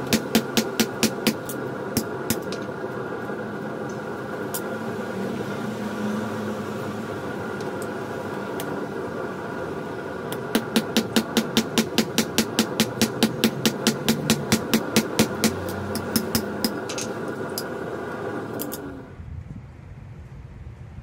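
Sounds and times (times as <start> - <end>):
hammer striking steel: 0.0 - 2.8, 10.3 - 17.7
mechanical hum: 0.0 - 21.0.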